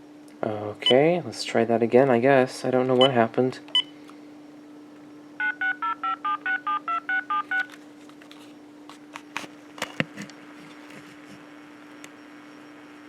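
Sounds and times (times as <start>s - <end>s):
phone clicks: 5.8s - 7.8s
steady electrical buzz: 7.6s - 13.0s.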